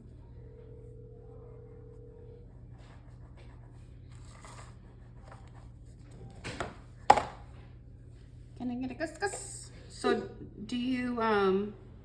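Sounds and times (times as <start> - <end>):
steady low hum: 0.0 - 12.0
knock on a table: 6.6 - 7.4.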